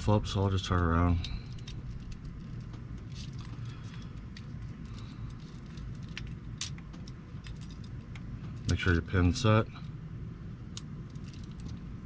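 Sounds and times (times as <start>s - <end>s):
low hum: 0.0s - 12.0s
small metal clicks: 1.2s - 8.8s.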